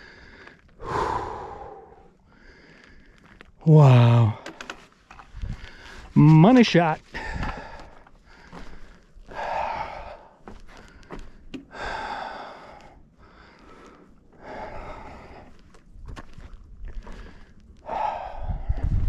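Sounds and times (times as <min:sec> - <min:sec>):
person breathing hard: 0:00.0 - 0:03.4, 0:05.4 - 0:06.2, 0:07.1 - 0:15.8, 0:17.0 - 0:19.0.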